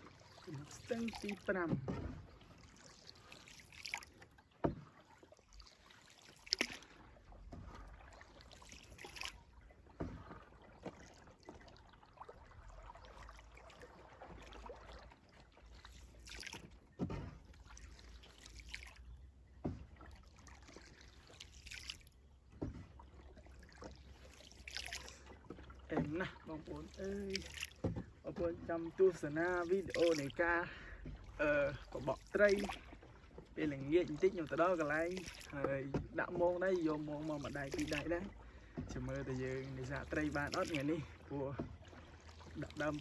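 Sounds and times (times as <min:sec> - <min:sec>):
water splashes: 0:00.0 - 0:43.0.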